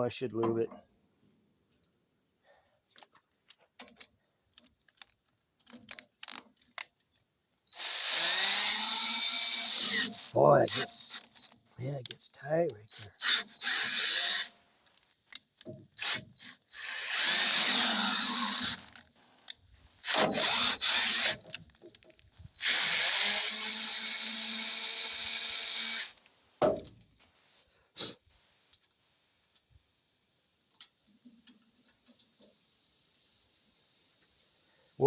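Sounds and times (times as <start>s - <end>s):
power drill whirring: 7.7s - 11.5s, 12.9s - 14.6s, 16.0s - 19.0s, 20.0s - 21.5s, 22.5s - 26.2s.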